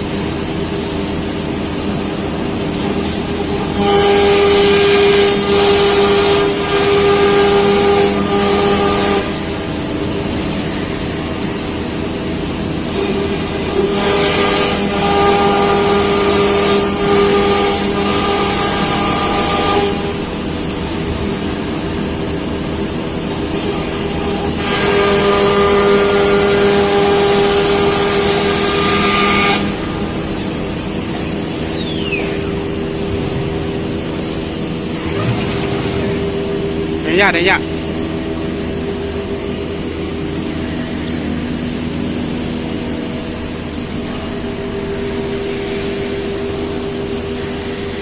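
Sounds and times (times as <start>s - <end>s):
cnc router whining: 0.0s - 48.0s
high falling whistle: 31.3s - 32.6s.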